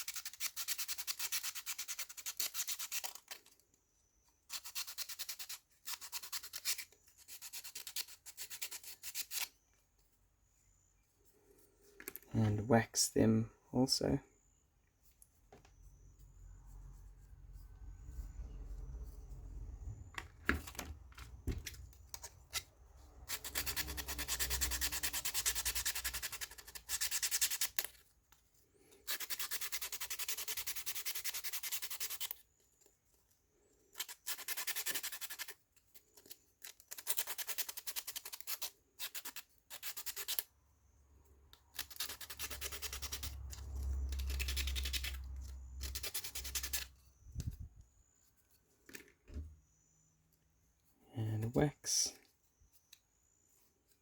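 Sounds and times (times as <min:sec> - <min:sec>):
hand rubbing wood: 0:41.8 - 0:49.8.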